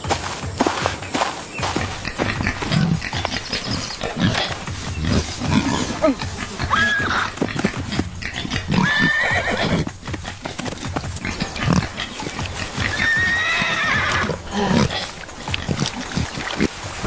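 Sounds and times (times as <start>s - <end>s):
thumps and knocks: 0.0s - 8.9s, 9.5s - 13.4s
animal high drawn-out cry: 5.1s - 7.5s, 8.4s - 9.9s, 12.7s - 15.2s.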